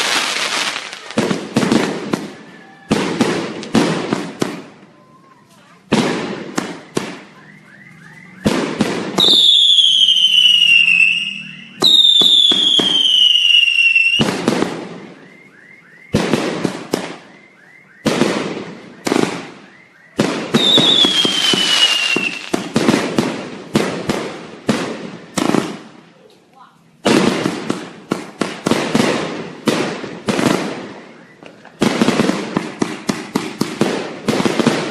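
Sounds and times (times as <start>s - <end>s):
fireworks banging and crackling: 0.0s - 34.9s
whistling firework shells: 5.9s - 25.8s, 27.8s - 34.9s.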